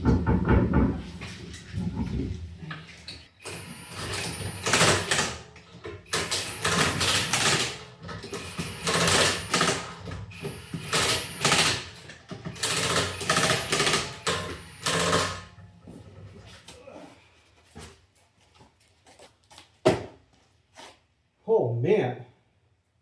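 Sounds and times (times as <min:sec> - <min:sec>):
rapid mechanical rattling: 0:06.1 - 0:15.6.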